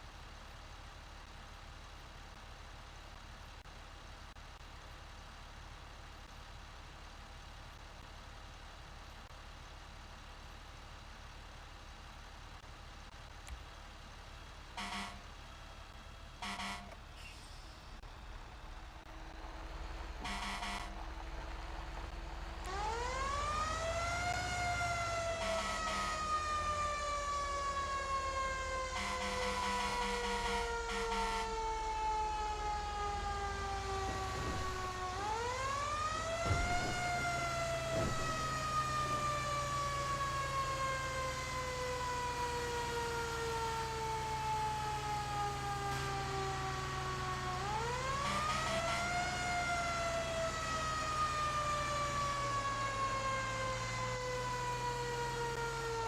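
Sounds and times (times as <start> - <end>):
siren wailing: 20.2 - 21.6, 22.5 - 56.0.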